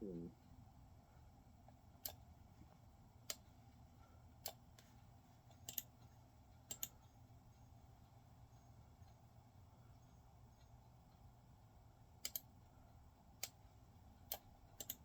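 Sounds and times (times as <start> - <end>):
computer mouse clicking: 2.0 - 2.2, 3.2 - 3.5, 4.4 - 4.9, 5.5 - 6.0, 6.6 - 7.0, 12.2 - 12.5, 13.4 - 13.6, 14.2 - 15.0.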